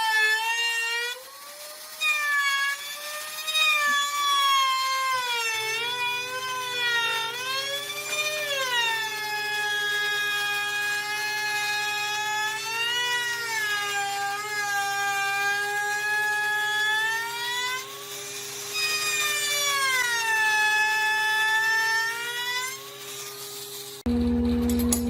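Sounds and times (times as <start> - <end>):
power tool motor whining: 0.0 - 24.1
machine hum: 14.9 - 25.0.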